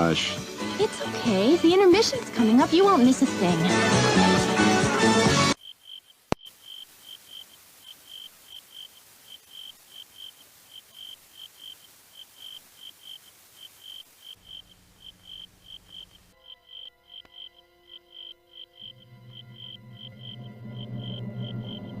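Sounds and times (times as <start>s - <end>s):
crickets chirping: 5.6s - 22.0s
low hum: 19.0s - 22.0s.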